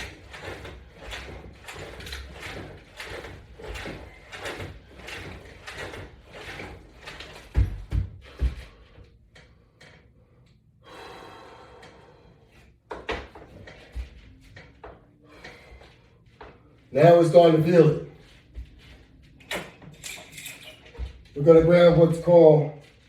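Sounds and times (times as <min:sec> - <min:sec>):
rhythmic resistance band strokes: 0:00.0 - 0:23.0
heavy knocks of equipment: 0:00.5 - 0:08.7.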